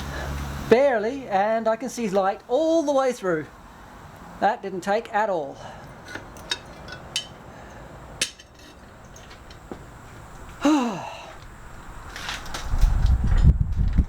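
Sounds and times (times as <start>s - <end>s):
metal clinks and knocks: 5.8s - 9.9s.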